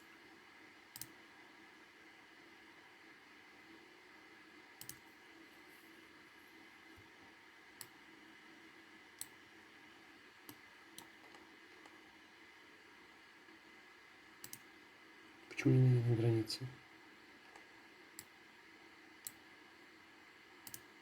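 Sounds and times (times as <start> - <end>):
faint room hum: 0.0 - 21.0
computer mouse clicks: 0.9 - 1.2, 4.8 - 5.1, 7.8 - 8.0, 9.2 - 9.4, 10.4 - 12.0, 14.4 - 14.7, 19.2 - 19.4, 20.6 - 20.9.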